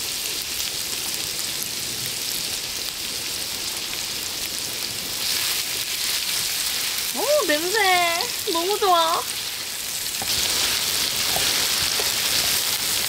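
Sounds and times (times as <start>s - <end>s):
food sizzling in pot: 0.0s - 13.0s.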